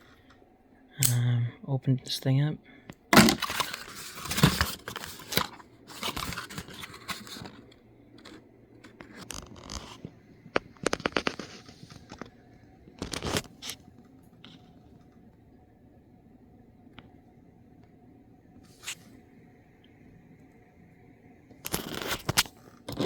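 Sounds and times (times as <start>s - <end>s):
plastic packaging clicks: 3.0s - 7.6s
plastic packaging rustling: 3.1s - 13.8s.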